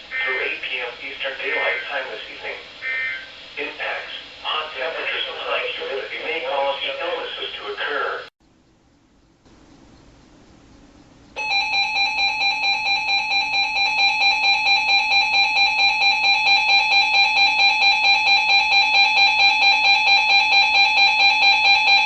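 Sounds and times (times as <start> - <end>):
pulsing alarm tone from radio: 2.8 - 3.4, 11.4 - 22.0.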